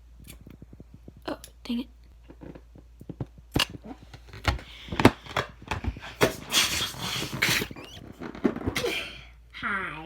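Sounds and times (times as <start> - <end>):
helium hissing from balloon: 6.4 - 8.0.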